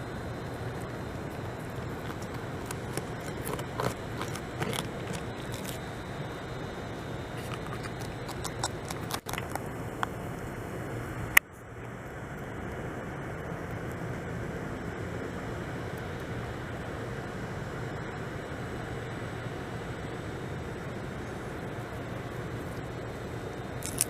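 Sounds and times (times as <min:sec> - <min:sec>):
steady background rumble: 0:00.0 - 0:24.0
beaver gnawing bark: 0:01.1 - 0:10.3, 0:23.8 - 0:24.0.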